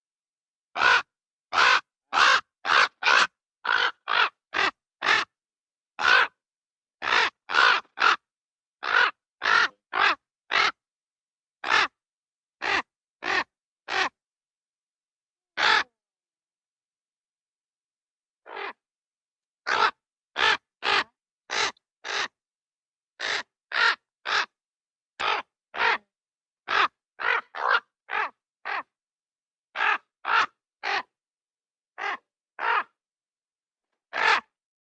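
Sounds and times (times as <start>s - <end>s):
raven croaking: 0.8s - 5.3s, 26.7s - 28.9s.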